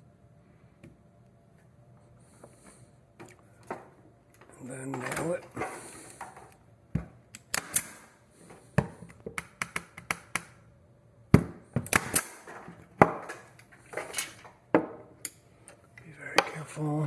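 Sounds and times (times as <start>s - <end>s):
pin nailer firing: 7.5s - 8.1s, 11.4s - 13.3s.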